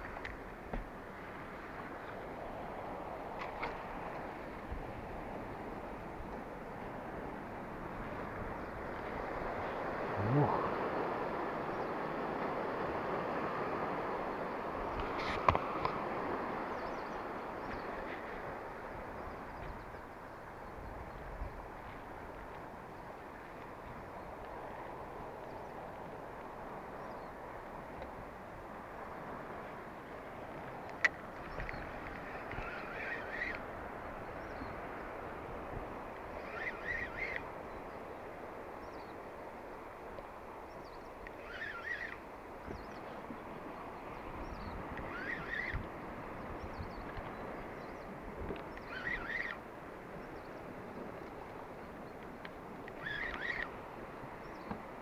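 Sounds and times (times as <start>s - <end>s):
open-air noise: 0.0s - 55.0s
water around boat: 0.0s - 55.0s
wind: 0.0s - 55.0s
knocks on boat: 0.7s - 1.0s.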